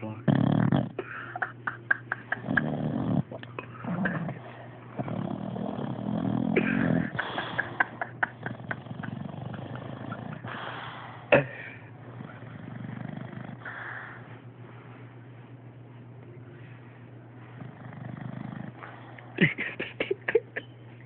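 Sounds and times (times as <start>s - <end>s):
dog snoring: 0.1s - 1.0s, 2.3s - 14.2s, 17.4s - 19.2s.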